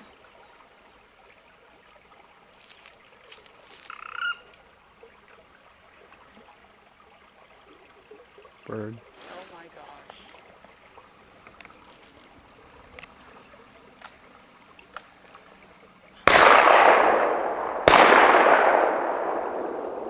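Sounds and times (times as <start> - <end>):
shotgun shots echoing: 16.2 - 20.0.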